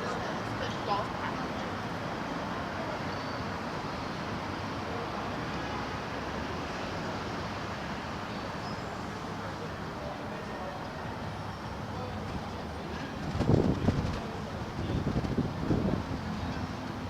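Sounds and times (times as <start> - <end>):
city street traffic: 0.0 - 17.0.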